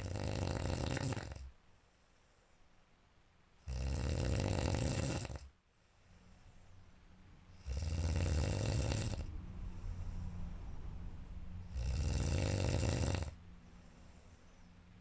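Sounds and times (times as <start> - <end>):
person snoring loudly: 0.0 - 1.5, 3.6 - 5.5, 7.5 - 10.1, 11.6 - 13.4
soft breathing: 1.0 - 3.0, 5.3 - 7.8, 9.1 - 12.3, 13.2 - 15.0.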